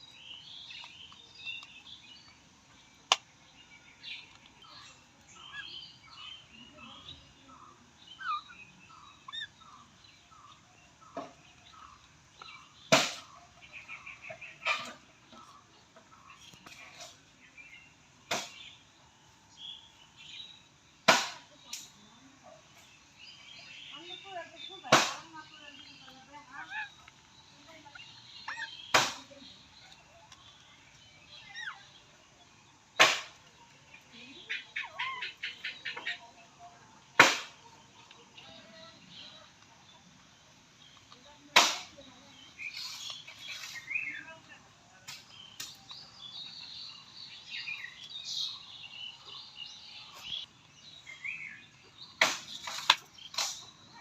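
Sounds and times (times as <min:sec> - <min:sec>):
bird chirps: 0:00.0 - 0:54.0
sharp loud snap: 0:12.9 - 0:13.3, 0:18.3 - 0:18.7, 0:21.0 - 0:21.9, 0:24.9 - 0:25.3, 0:28.9 - 0:29.3, 0:33.0 - 0:33.4, 0:37.2 - 0:37.6, 0:41.6 - 0:42.0, 0:52.2 - 0:53.7.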